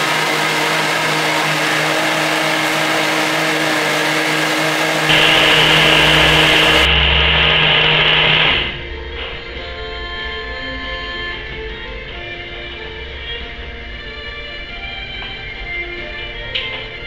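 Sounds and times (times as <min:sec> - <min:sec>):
electric blender running: 0:00.0 - 0:08.8.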